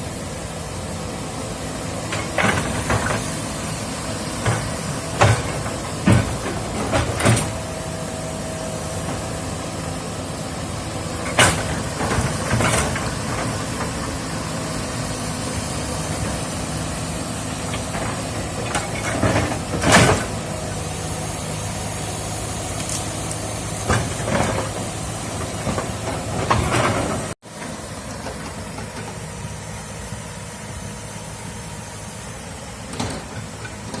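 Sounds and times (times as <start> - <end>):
excavator diesel engine running: 0.0 - 34.0.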